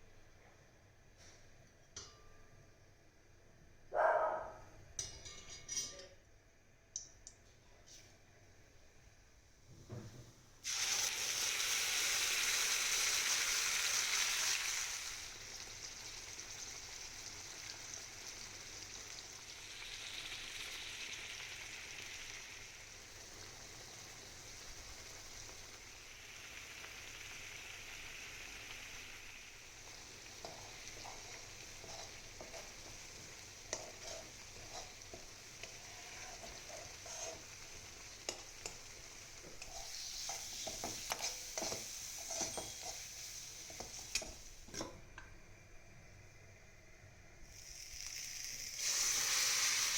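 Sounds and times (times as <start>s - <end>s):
spoon clicking against pan: 7.0s - 7.4s
food sizzling in hot fat: 10.6s - 49.9s.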